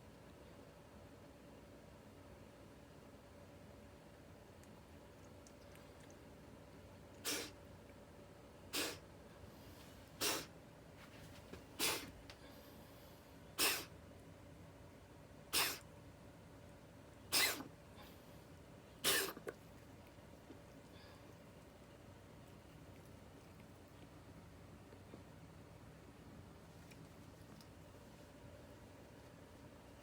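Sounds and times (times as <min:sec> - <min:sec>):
cat hacking coughs: 0:07.2 - 0:07.6, 0:08.7 - 0:09.0, 0:10.2 - 0:10.5, 0:11.8 - 0:12.1, 0:13.6 - 0:13.9, 0:15.5 - 0:15.9, 0:17.3 - 0:17.7, 0:19.0 - 0:19.5.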